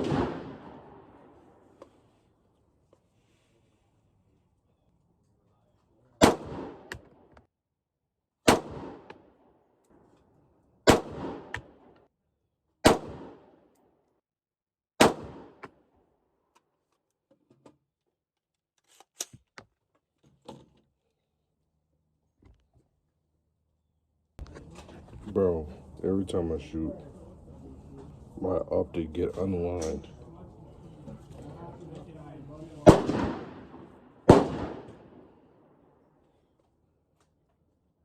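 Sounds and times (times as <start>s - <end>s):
rifle shots: 0.0s - 1.5s, 6.2s - 7.2s, 8.4s - 9.2s, 10.8s - 11.9s, 12.8s - 13.6s, 15.0s - 15.7s, 32.8s - 35.4s.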